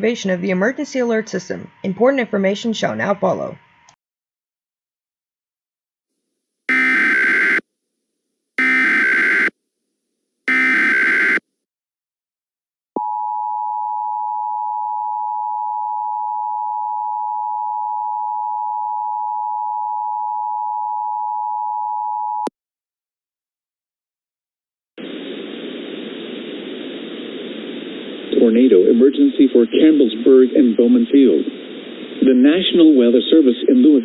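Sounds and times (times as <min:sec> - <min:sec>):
two-tone attention signal: 0:06.7 - 0:07.6
steady hiss: 0:25.0 - 0:34.0.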